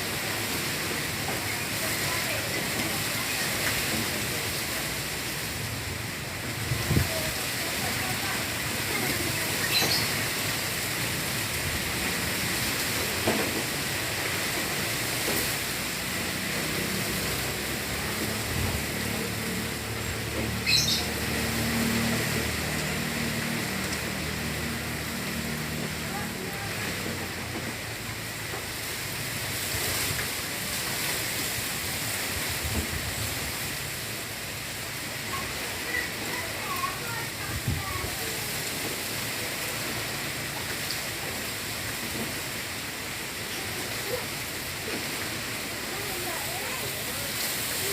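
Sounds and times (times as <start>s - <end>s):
wind buffeting the microphone: 6.6s - 7.5s, 37.4s - 38.2s.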